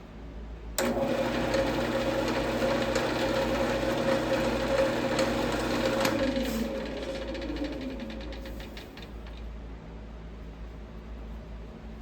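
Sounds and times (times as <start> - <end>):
wood lathe motor whining: 0.8 - 9.1.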